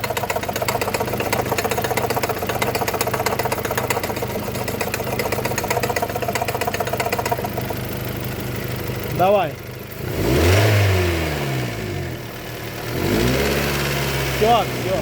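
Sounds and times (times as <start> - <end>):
fast knocking tick: 0.0 - 8.0
car engine idling: 0.0 - 15.0.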